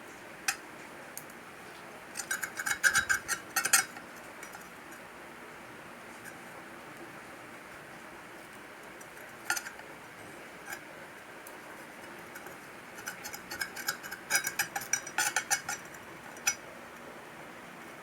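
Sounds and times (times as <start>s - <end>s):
faint steady hiss: 0.0s - 18.0s.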